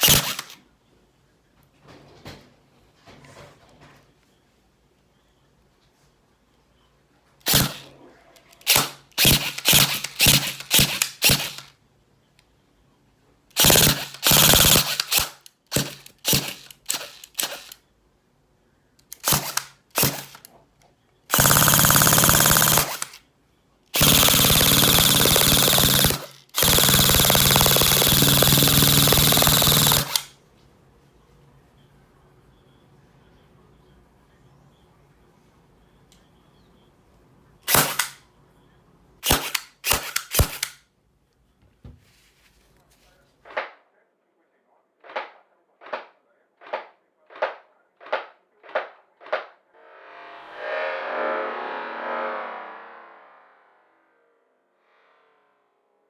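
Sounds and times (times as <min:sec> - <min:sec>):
airsoft rifle full-auto bursts: 0:00.0 - 0:00.6, 0:07.4 - 0:07.9, 0:08.6 - 0:11.7, 0:13.6 - 0:17.8, 0:19.2 - 0:20.5, 0:21.3 - 0:23.2, 0:24.0 - 0:30.3, 0:37.7 - 0:38.2, 0:39.2 - 0:40.8.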